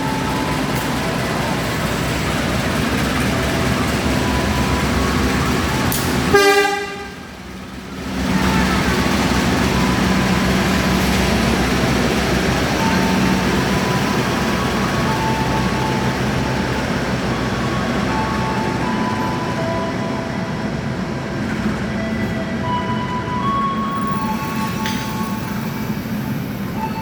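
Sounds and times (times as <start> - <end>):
train rumbling past: 0.0 - 27.0
train horn toot: 5.9 - 7.3.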